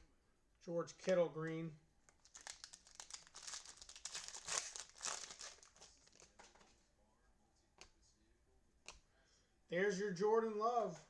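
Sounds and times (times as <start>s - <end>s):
plastic wrapper crinkling: 2.0s - 6.7s.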